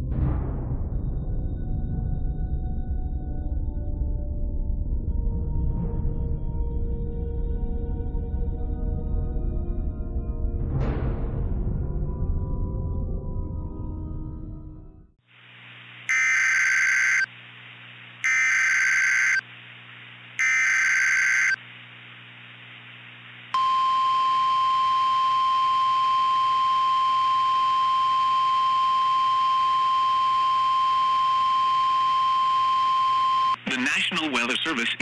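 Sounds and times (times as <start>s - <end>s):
steady single-pitch alert tone: 16.1s - 17.3s, 18.2s - 19.4s, 20.4s - 21.6s, 23.6s - 33.6s
warbling digital data tones: 16.1s - 17.3s, 18.2s - 19.4s, 20.4s - 21.6s.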